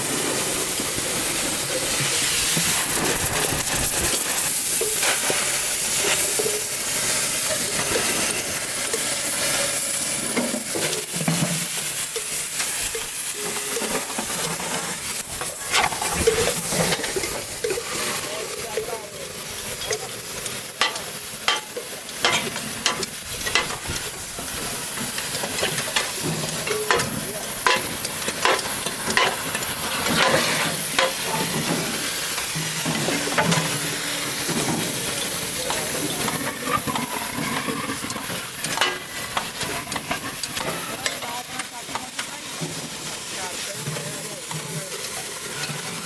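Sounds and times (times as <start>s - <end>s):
steady hiss: 0.0s - 46.0s
metal clanking and scraping: 12.6s - 18.2s, 20.8s - 24.4s, 25.0s - 40.8s.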